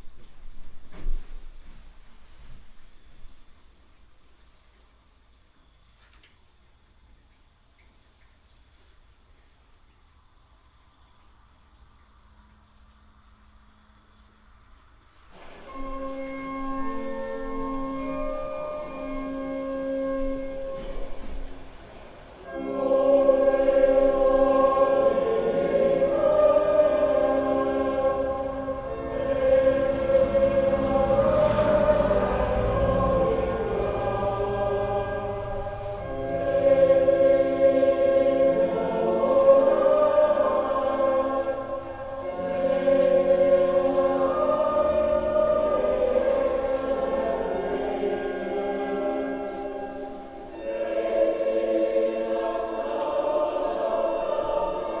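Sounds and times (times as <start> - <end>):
choir singing: 15.4 - 55.0.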